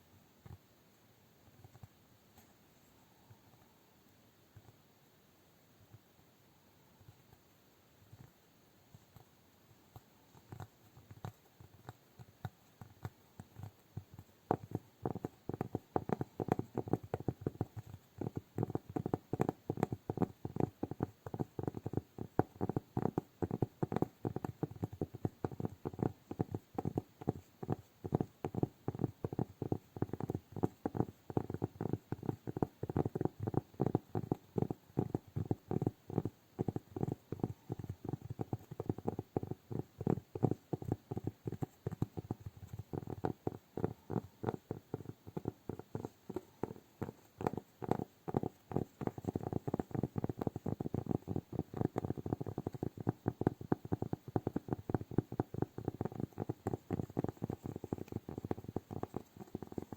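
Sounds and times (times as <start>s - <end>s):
fingertips tapping on cork: 9.9s - 59.9s.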